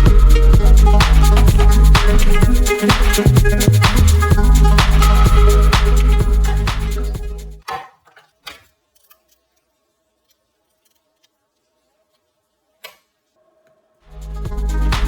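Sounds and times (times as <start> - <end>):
electronic background music: 0.0 - 7.6, 14.1 - 15.0.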